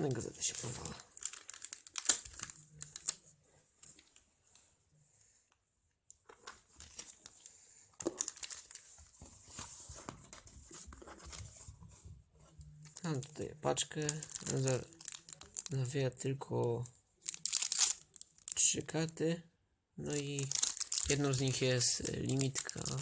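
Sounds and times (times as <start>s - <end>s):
packaging crinkling and rustling: 0.0s - 4.3s, 6.3s - 11.6s, 12.8s - 18.8s, 20.1s - 23.0s.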